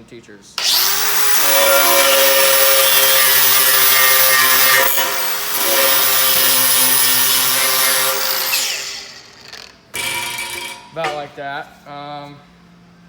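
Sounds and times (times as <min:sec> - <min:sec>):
angle grinder grinding metal: 0:00.6 - 0:11.0.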